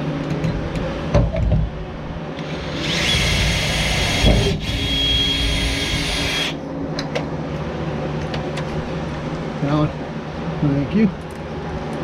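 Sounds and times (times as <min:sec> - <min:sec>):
electric drill whining: 0:02.4 - 0:06.6.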